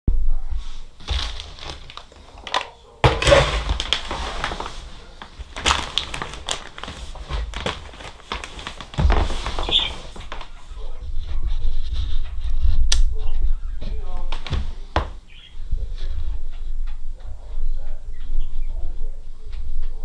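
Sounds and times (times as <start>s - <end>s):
packaging crinkling and rustling: 1.0s - 10.8s.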